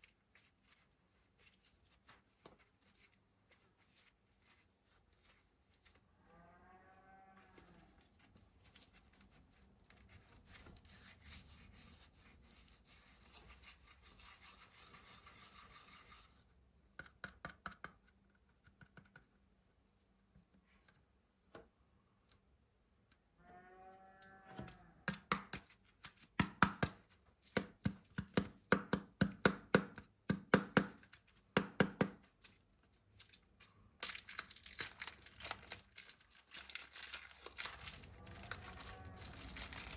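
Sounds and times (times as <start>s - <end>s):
packaging crinkling and tearing: 32.3s - 39.9s
packaging rubbing and scraping: 32.3s - 39.9s.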